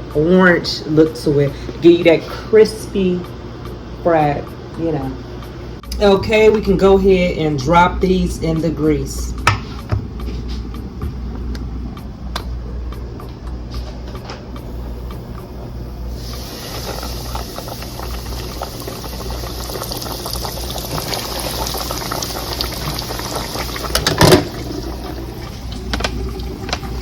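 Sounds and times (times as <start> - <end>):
steady low hum: 0.0 - 27.0
chicken sizzling in deep fryer oil: 16.1 - 27.0.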